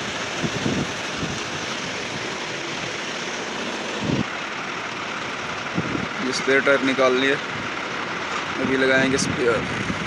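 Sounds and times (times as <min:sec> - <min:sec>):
steady rushing noise: 0:00.0 - 0:04.4.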